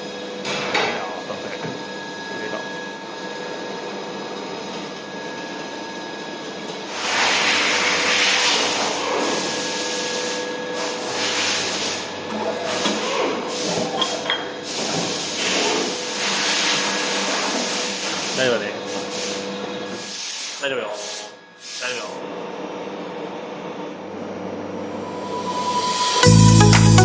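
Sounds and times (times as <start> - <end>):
loud hiss: 24.8 - 27.0.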